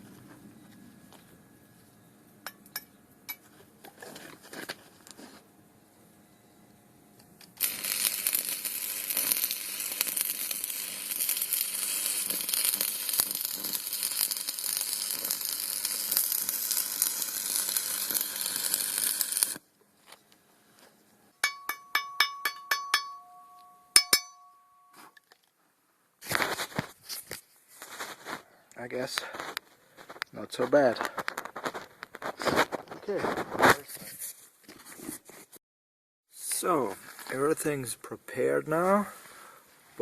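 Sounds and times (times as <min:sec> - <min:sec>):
welding arc crackling and sizzling: 0:07.5 - 0:19.6
sharp ringing metallic taps: 0:21.4 - 0:25.0.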